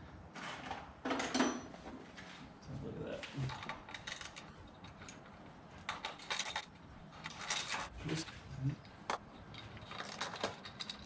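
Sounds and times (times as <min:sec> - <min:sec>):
metal tools clicking and clattering: 0:03.5 - 0:07.9, 0:09.4 - 0:11.0.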